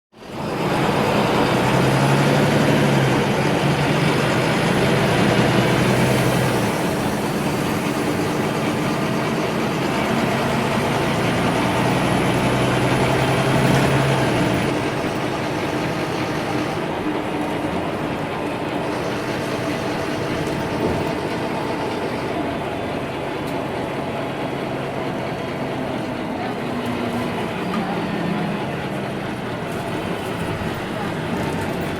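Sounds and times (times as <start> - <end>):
bus engine: 0.1 - 31.9
road noise: 0.1 - 31.9.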